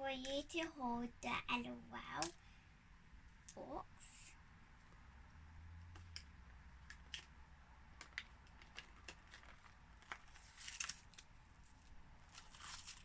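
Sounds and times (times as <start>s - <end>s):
small plastic clicks and taps: 2.2s - 2.4s, 5.9s - 11.3s
plastic wrapping crinkling: 6.0s - 13.0s.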